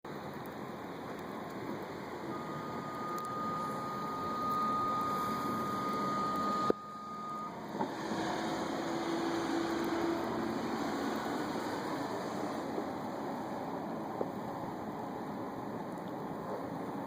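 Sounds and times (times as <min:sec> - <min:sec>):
track loader running: 0:01.4 - 0:13.6
high-pitched alarm tone: 0:02.3 - 0:07.6.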